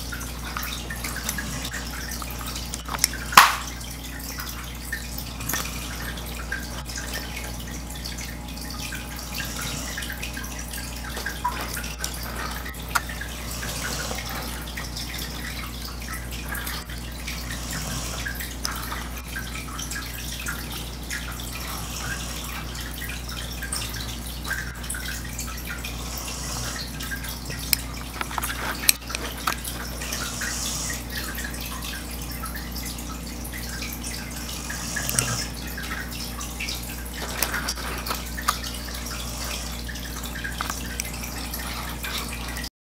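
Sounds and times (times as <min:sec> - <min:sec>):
breathy snoring: 0:09.2 - 0:10.2, 0:12.0 - 0:14.7, 0:17.4 - 0:18.5, 0:25.9 - 0:27.1, 0:29.9 - 0:31.2, 0:34.3 - 0:35.6, 0:38.9 - 0:39.9
small ticks: 0:34.9 - 0:35.5.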